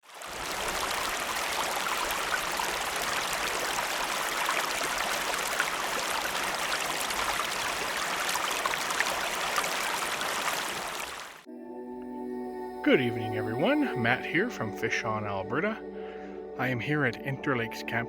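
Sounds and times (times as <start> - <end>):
running water rushing: 0.0 - 11.5.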